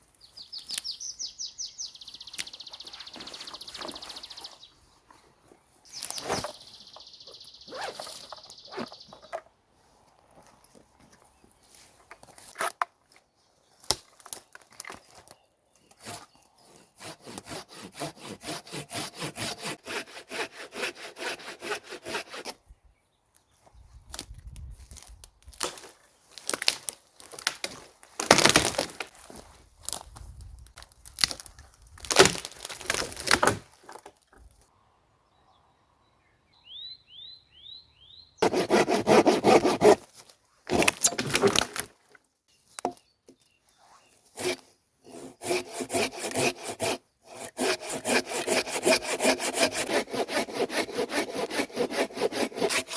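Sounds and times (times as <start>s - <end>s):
wood being sawn by hand: 16.0s - 22.5s, 38.4s - 40.0s, 44.4s - 52.9s.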